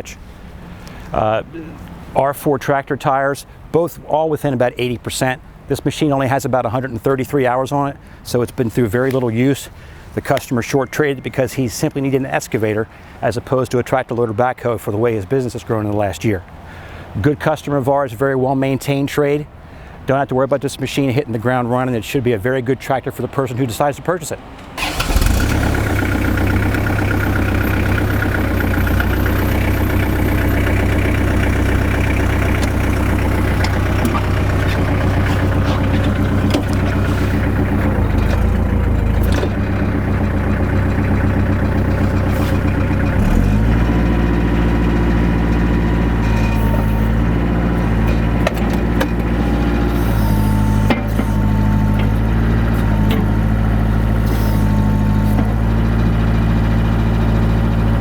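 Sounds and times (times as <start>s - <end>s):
diesel engine idling and revving: 24.6s - 58.0s.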